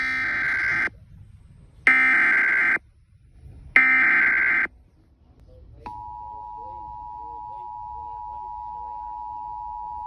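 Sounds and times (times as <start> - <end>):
buzzy electronic data screech: 0.0 - 0.9
steady attention tone: 0.0 - 0.9, 1.9 - 2.9.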